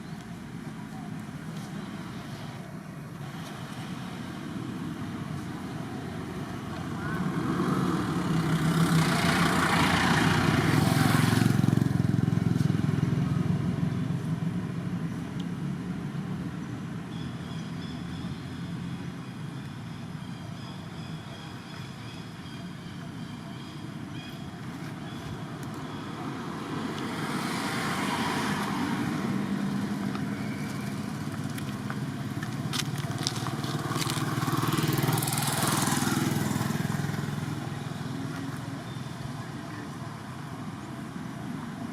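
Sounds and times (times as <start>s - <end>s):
motor engine passing by: 6.6s - 13.9s, 26.0s - 39.1s.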